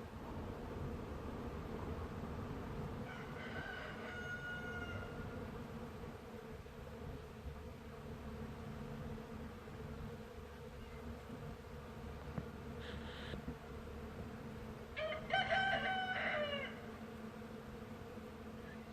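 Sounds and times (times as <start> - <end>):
bees buzzing: 0.0 - 18.9
rooster crowing: 3.0 - 5.4, 15.0 - 16.9.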